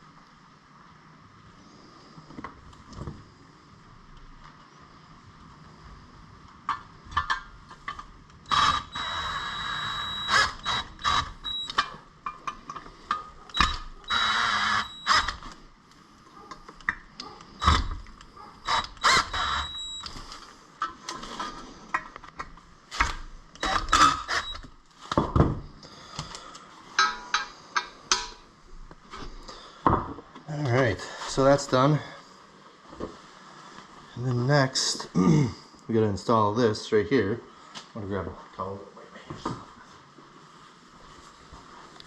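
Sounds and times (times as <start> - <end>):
hand tools clicking and clinking on metal: 10.6 - 14.2, 27.0 - 28.4.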